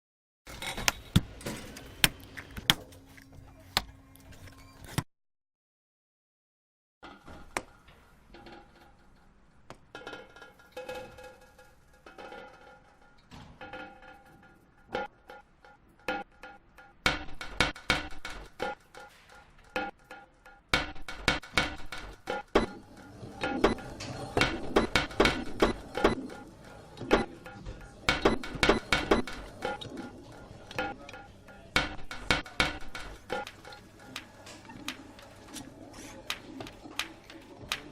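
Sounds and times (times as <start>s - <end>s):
hard objects knocking and clinking: 20.8s - 35.7s.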